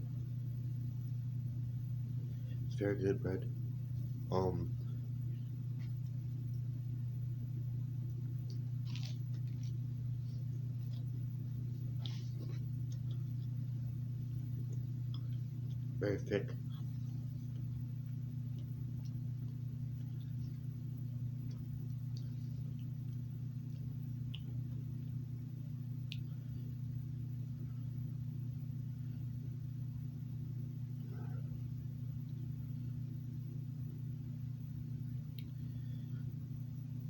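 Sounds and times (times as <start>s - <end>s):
low room hum: 0.0s - 37.0s
faint clicks: 35.3s - 35.7s.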